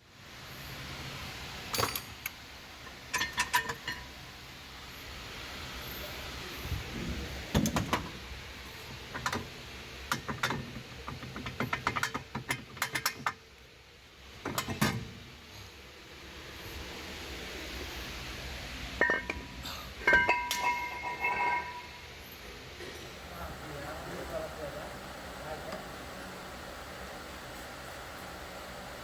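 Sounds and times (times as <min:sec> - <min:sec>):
steady hiss: 0:00.0 - 0:29.0
metal tools clinking: 0:01.7 - 0:02.3, 0:03.1 - 0:04.1, 0:19.0 - 0:22.0.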